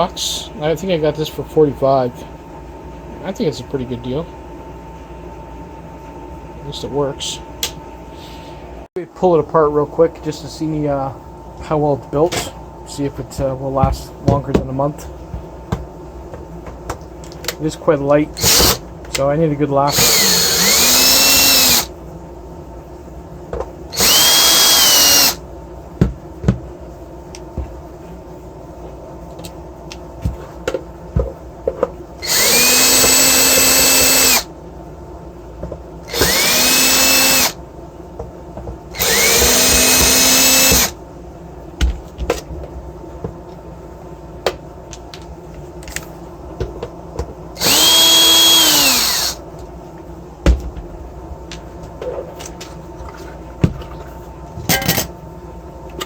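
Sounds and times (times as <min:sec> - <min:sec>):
power drill whining: 0:18.4 - 0:18.8, 0:19.9 - 0:21.9, 0:24.0 - 0:25.4, 0:32.2 - 0:34.4, 0:36.1 - 0:37.6, 0:39.0 - 0:41.0, 0:47.6 - 0:49.4.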